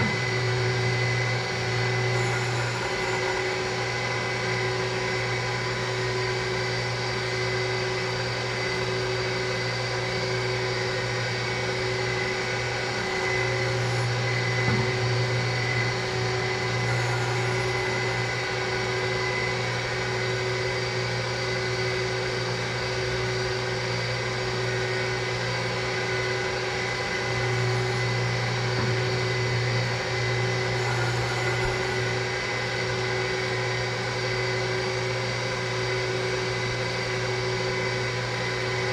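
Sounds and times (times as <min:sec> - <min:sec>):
surface grinder running: 0:00.0 - 0:36.5.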